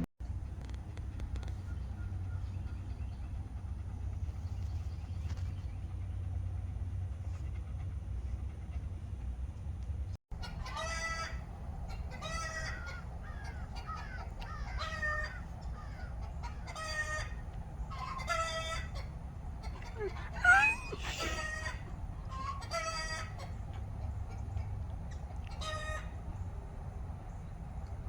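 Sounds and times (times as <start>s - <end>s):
steady low rumble: 0.0s - 28.0s
chickens calling: 10.3s - 28.0s.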